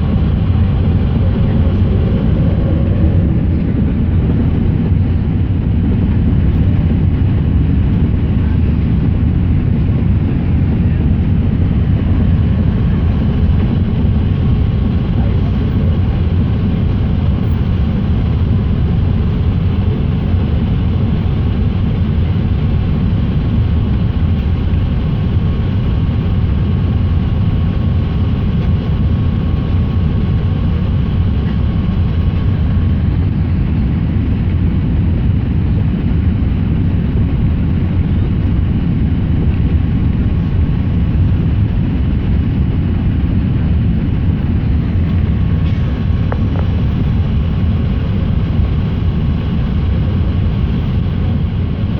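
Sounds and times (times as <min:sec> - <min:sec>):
aircraft cabin engine rumble: 0:00.0 - 0:51.9
faint steady whine: 0:00.0 - 0:51.9.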